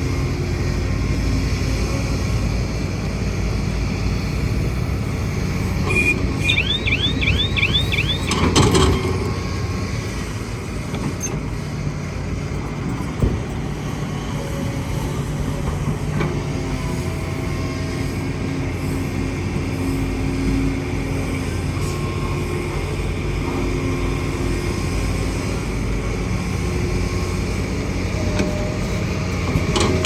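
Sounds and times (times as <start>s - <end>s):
excavator diesel engine running: 0.0s - 30.0s
high squeaks: 5.9s - 9.1s.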